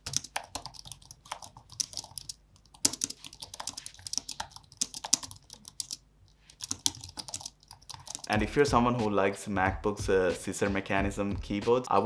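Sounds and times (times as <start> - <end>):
typing on a computer keyboard: 0.0 - 8.4.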